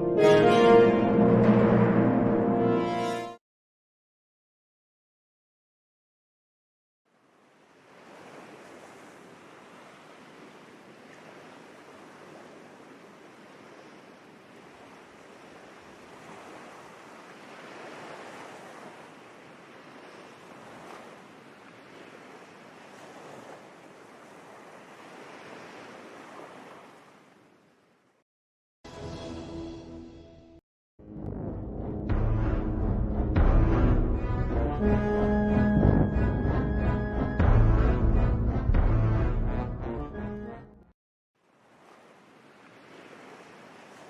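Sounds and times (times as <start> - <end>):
ocean waves washing in: 7.1 - 27.4, 41.4 - 44.0.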